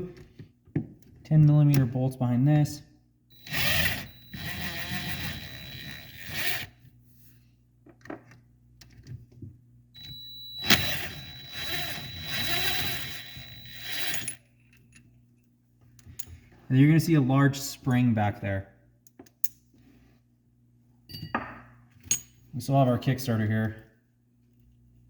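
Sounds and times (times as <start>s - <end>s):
power driver whining: 3.3s - 6.7s, 10.0s - 14.4s.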